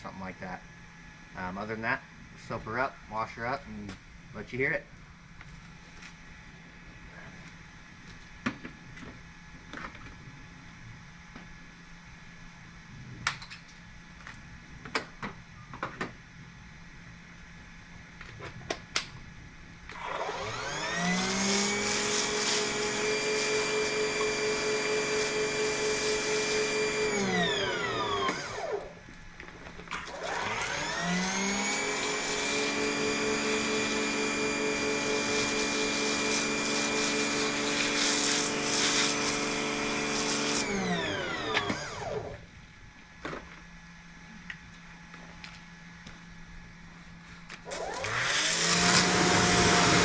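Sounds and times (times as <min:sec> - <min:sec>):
pressure washer motor whining: 0:19.9 - 0:29.1, 0:29.8 - 0:42.5, 0:47.6 - 0:50.0.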